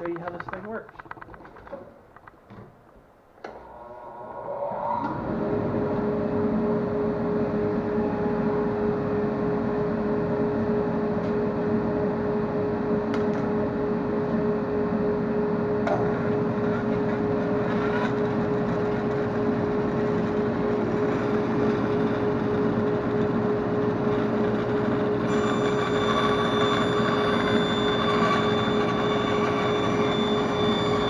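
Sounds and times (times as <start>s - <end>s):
high machine whine: 0.0s - 31.0s
dust collector and bandsaw humming: 15.8s - 31.0s.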